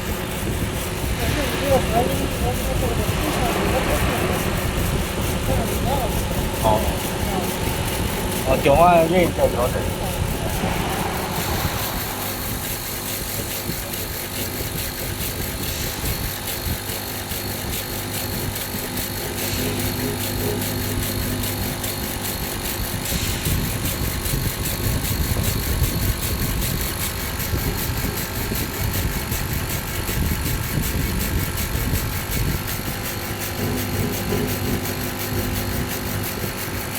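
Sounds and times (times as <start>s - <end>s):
rough rumble: 0.0s - 14.8s
fast even ticking: 0.0s - 15.5s
carving machine motor running: 0.0s - 36.9s.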